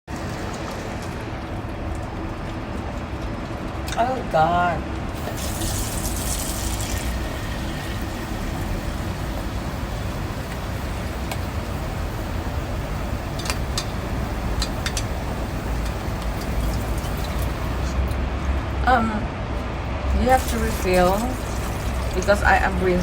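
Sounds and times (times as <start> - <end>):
washing machine churning: 0.0 - 23.0.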